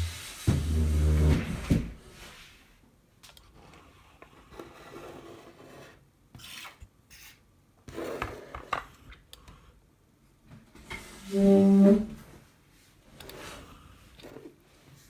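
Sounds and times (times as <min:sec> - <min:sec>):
tools scraping on a work surface: 0:03.6 - 0:06.8.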